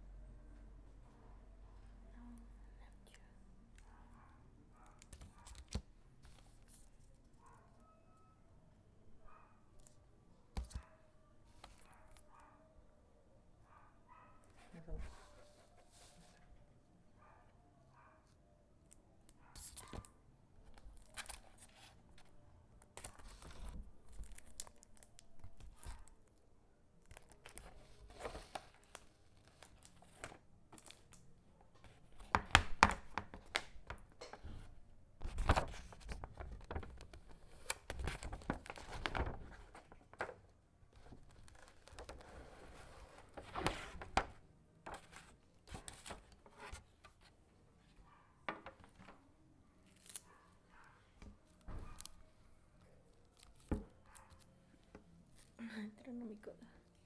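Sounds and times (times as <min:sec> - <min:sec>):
plastic and paper crinkling: 0:19.5 - 0:26.4, 0:27.0 - 0:47.4, 0:48.6 - 0:55.6.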